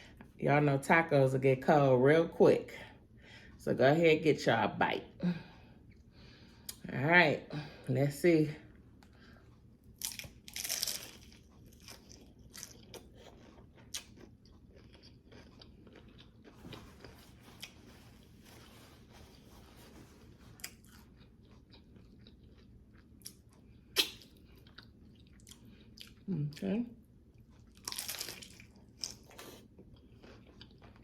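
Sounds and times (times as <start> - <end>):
chewing: 10.0 - 18.7, 20.2 - 26.2, 27.4 - 31.0
taco shell crunching: 10.0 - 19.1, 27.6 - 31.0.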